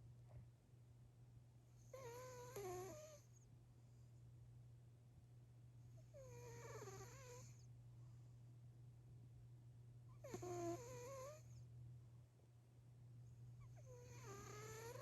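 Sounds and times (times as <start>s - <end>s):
steady low hum: 0.0s - 15.0s
cat snoring: 1.8s - 3.4s, 6.0s - 7.7s, 10.1s - 11.6s, 13.6s - 15.0s.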